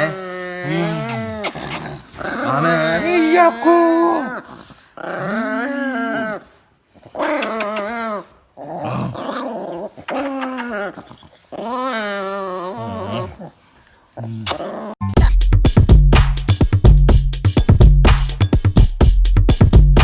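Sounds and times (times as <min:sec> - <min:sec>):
dog growling and whining: 0:00.0 - 0:13.5, 0:14.2 - 0:15.0.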